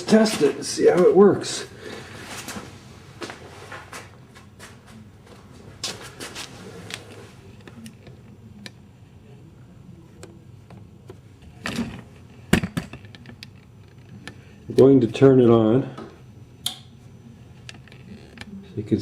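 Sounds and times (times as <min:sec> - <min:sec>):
hard objects clicking and knocking: 0:11.6 - 0:14.4.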